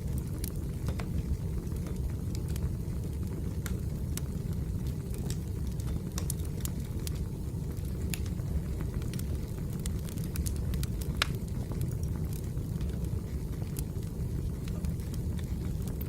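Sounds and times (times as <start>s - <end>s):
crackles and pops of burning logs: 0.0s - 16.0s
fire low rumble: 0.0s - 16.0s.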